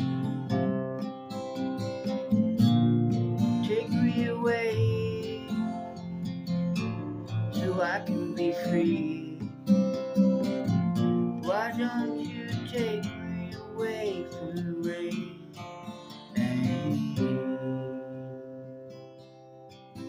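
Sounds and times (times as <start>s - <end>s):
acoustic guitar strumming: 0.0s - 20.0s
gliding melody line: 3.6s - 15.6s.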